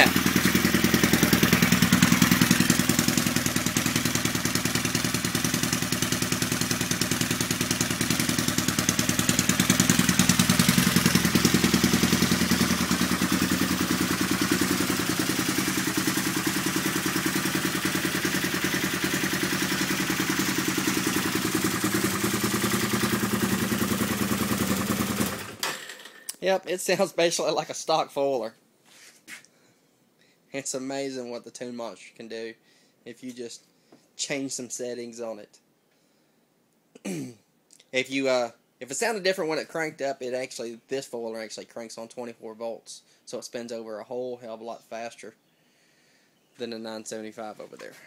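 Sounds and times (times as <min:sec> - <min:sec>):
atv engine idling: 0:00.0 - 0:26.2.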